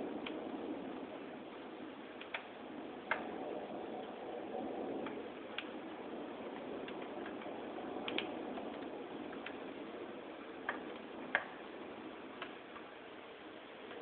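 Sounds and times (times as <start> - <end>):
rain falling steadily: 0.0 - 14.0
drops ticking on hard surface: 2.2 - 3.4, 6.5 - 9.7, 10.5 - 13.0.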